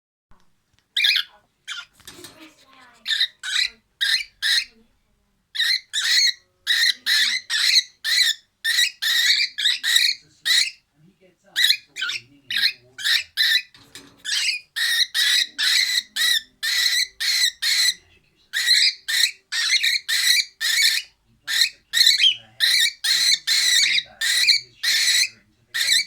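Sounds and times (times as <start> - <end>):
cockatiel hissing screeches: 3.0 - 4.8, 5.6 - 10.8, 11.6 - 18.0, 18.6 - 26.0.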